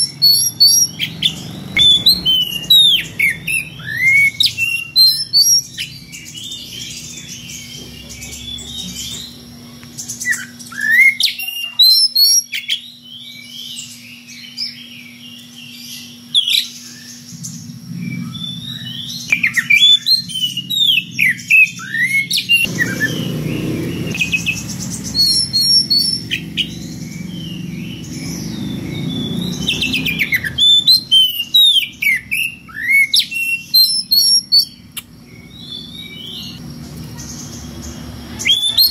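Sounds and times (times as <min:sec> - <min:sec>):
bird singing whistles and chirps: 0:00.0 - 0:09.4, 0:10.0 - 0:36.6, 0:37.2 - 0:38.9
low steady hum: 0:13.0 - 0:22.8.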